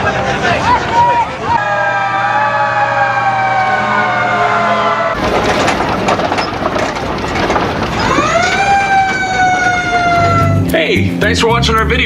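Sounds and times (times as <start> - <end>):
fire truck siren wailing: 0.2 - 5.4, 7.5 - 10.7
rising tone: 1.5 - 5.2
loud rushing clattering noise: 5.1 - 10.4.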